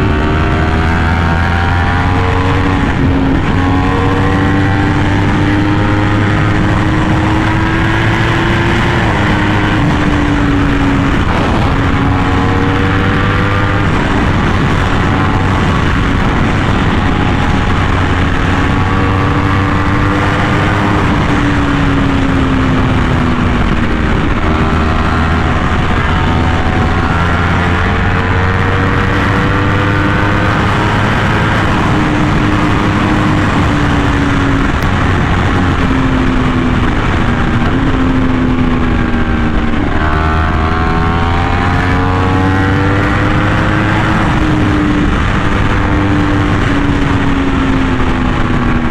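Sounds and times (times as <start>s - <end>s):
motorcycle engine at speed: 0.0s - 48.9s
wind rush on microphone: 0.0s - 48.9s.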